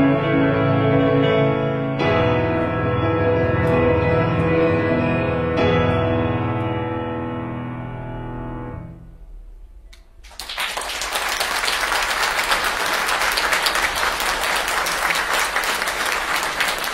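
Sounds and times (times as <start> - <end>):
audience applause: 10.2 - 16.9.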